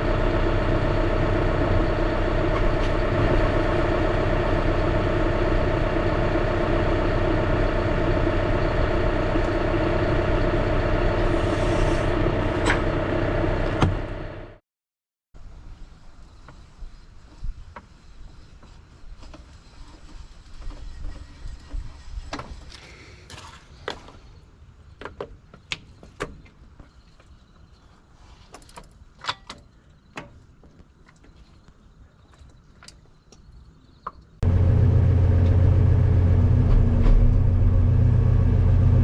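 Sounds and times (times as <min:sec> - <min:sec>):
low steady rumble: 0:00.0 - 0:14.6, 0:34.4 - 0:39.0.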